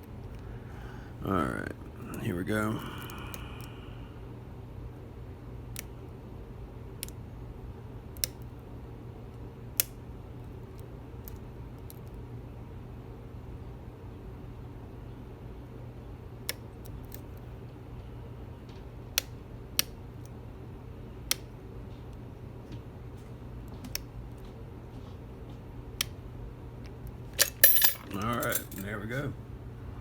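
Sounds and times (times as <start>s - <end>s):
low hum: 0.0s - 4.2s
lock picks clicking in padlock: 27.4s - 28.9s
metal clinks: 27.4s - 29.0s.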